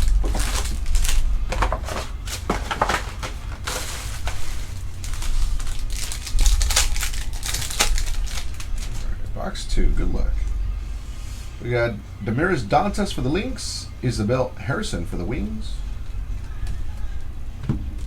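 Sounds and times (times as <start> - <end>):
cardboard being handled: 0.0 - 9.0
plastic packaging crinkling and tearing: 0.0 - 9.3.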